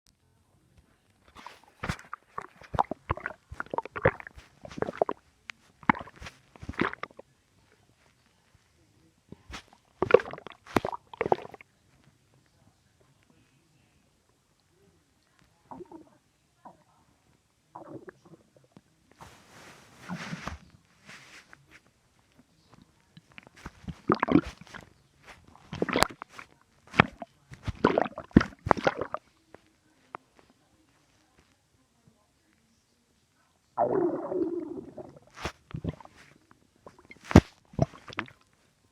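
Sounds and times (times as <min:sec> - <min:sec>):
stomach gurgling: 0:00.9 - 0:11.8, 0:15.4 - 0:17.0, 0:17.7 - 0:31.5, 0:33.7 - 0:38.9.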